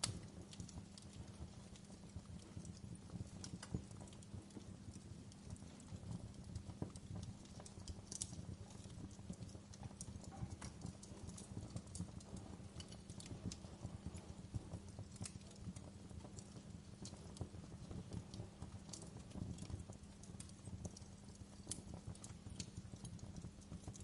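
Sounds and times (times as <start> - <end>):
sharp fire pops: 0.0 - 4.0
campfire flames rumbling: 0.0 - 24.0
fire crackling: 0.0 - 24.0.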